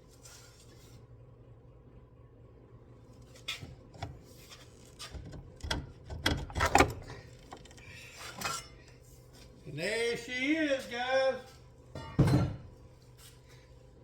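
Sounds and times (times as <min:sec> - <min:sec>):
metal clanks of tools: 0:12.0 - 0:12.6.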